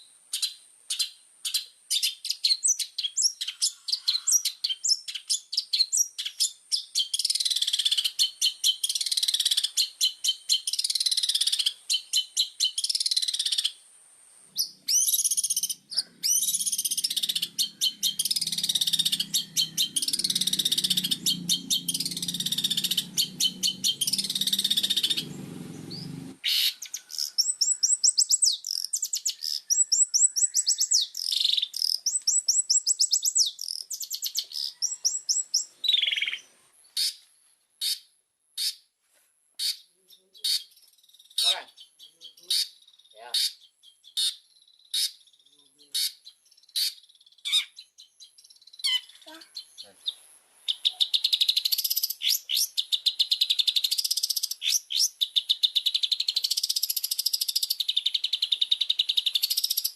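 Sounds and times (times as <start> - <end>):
faint low continuous sound: 13.6 - 29.4
shrike singing: 14.5 - 36.5.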